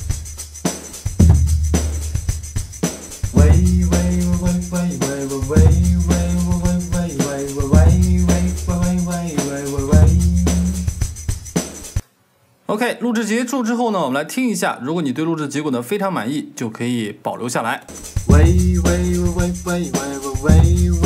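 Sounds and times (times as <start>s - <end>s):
background music with light percussion: 0.0s - 12.0s, 17.9s - 21.0s.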